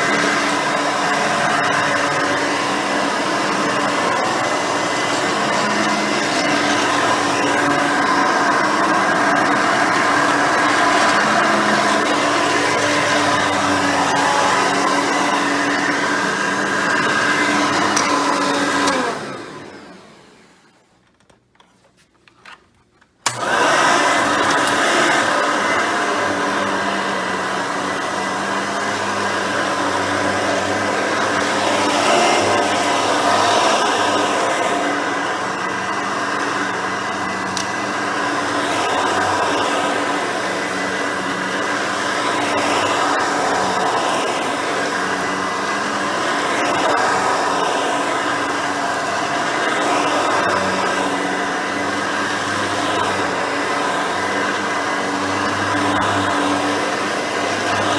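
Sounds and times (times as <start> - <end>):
upright vacuum running: 0.0 - 20.8, 23.2 - 57.9.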